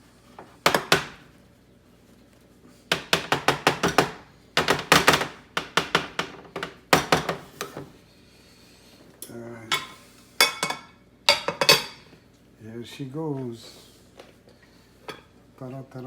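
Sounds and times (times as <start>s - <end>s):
baking pan knocking: 0.6s - 1.2s, 2.9s - 7.5s.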